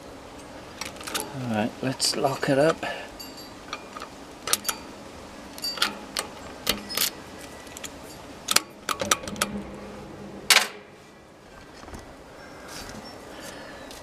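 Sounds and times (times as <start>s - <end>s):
bike lock metal clicks: 3.7s - 4.8s.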